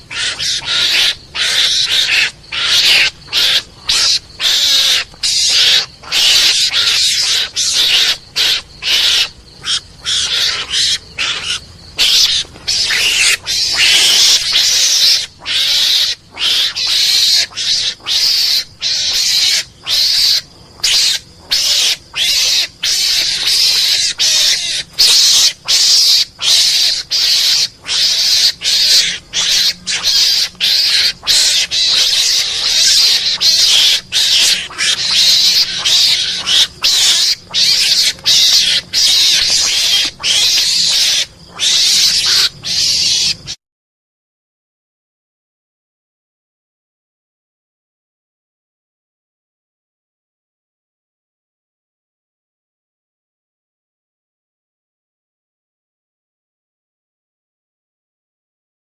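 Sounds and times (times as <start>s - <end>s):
harsh hissing animal calls: 0.0s - 43.6s.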